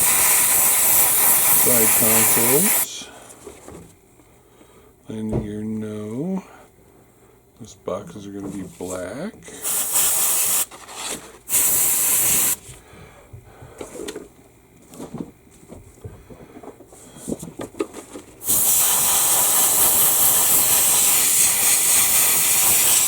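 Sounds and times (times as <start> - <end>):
airbrush spraying hiss: 0.0 - 2.9, 9.6 - 10.7, 11.5 - 12.6, 18.4 - 23.0.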